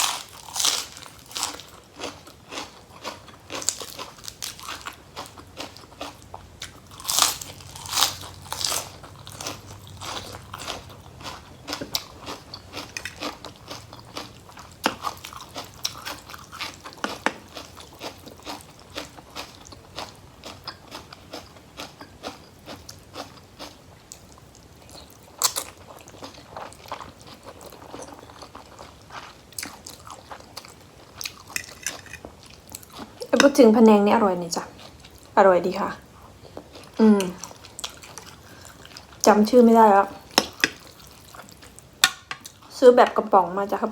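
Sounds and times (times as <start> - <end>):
person chewing crunchy food: 0.0 - 33.6, 36.0 - 39.3, 40.2 - 42.7.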